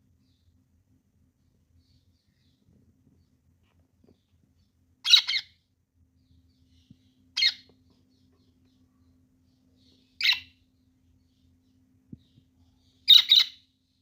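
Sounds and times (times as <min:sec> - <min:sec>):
parrot calling: 0:05.0 - 0:05.6, 0:07.4 - 0:07.7, 0:10.2 - 0:10.6, 0:13.0 - 0:13.6.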